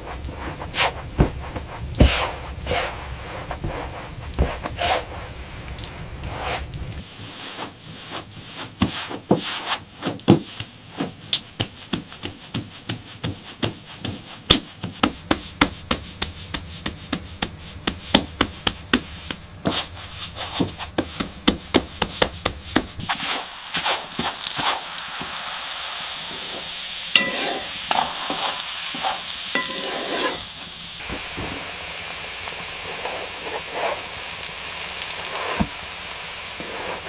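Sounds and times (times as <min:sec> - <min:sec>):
rubbing or scraping: 0:00.7 - 0:05.3, 0:27.2 - 0:30.5, 0:32.8 - 0:35.8.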